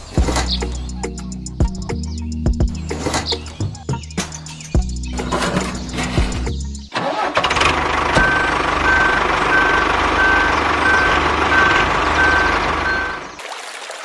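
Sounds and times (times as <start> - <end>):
truck engine running: 5.1 - 6.8, 7.5 - 13.3
reversing alarm beeping: 8.2 - 13.3.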